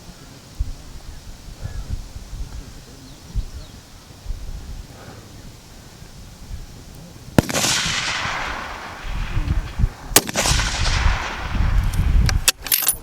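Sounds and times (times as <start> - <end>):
rifle shots with rolling echo: 7.4 - 12.0.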